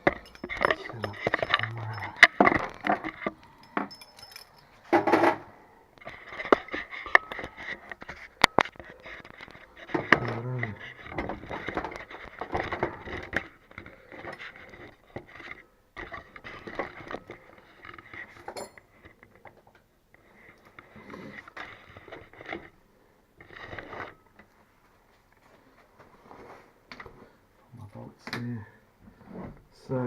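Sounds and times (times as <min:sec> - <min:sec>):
metal tools clinking and scraping: 0:00.0 - 0:19.3.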